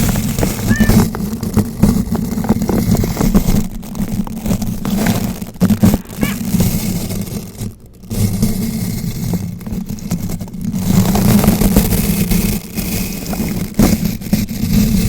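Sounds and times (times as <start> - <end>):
brush scratching microphone: 4.4 - 11.4.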